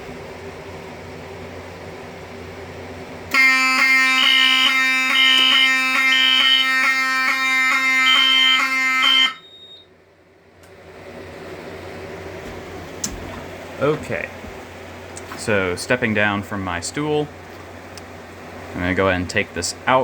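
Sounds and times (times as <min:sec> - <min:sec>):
fire alarm horn buzzing: 0:03.3 - 0:09.9
pulsing high beep: 0:03.4 - 0:09.8.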